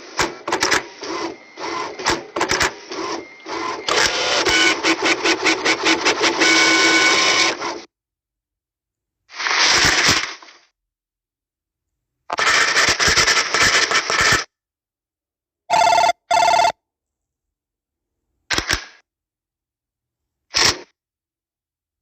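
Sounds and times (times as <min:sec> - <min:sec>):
telephone ringing: 0:15.7 - 0:16.8.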